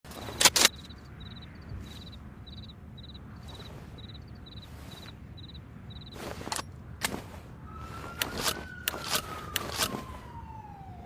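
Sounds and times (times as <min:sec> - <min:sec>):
shotgun handling clicks: 0:00.1 - 0:00.9, 0:08.2 - 0:10.0
cricket chirping: 0:00.1 - 0:06.6.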